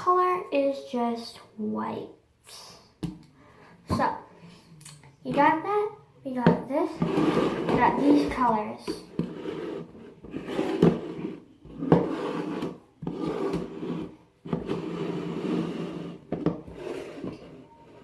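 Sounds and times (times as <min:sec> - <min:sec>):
rubbing and scraping handling noise: 0:06.7 - 0:18.0.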